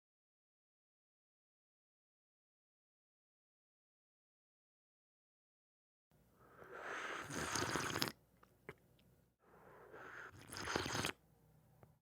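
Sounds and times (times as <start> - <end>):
slurping sips from a mug: 6.5 - 8.8, 9.6 - 11.2.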